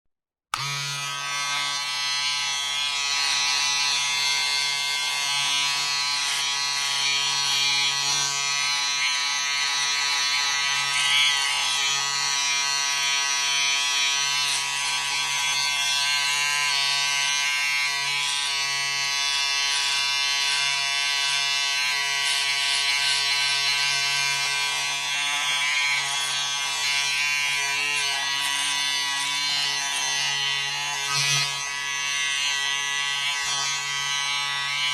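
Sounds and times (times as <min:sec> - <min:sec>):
electric razor buzzing: 0:00.5 - 0:34.9.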